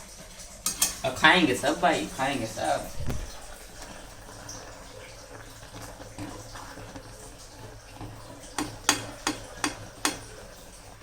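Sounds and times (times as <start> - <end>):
metal utensil clinking against pan: 0.6 - 1.2, 8.6 - 10.3.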